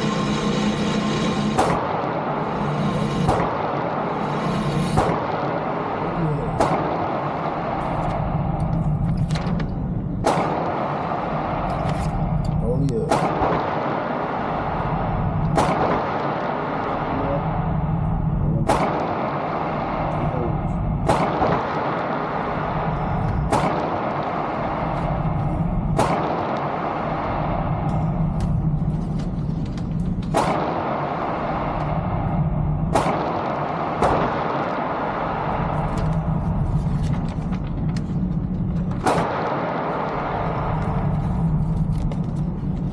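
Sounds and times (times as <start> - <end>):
low background rumble: 0.0 - 42.9
steady background noise: 0.0 - 42.9
pistol shot: 1.4 - 12.4, 13.0 - 17.1, 18.6 - 28.7, 30.2 - 36.6, 38.9 - 41.2.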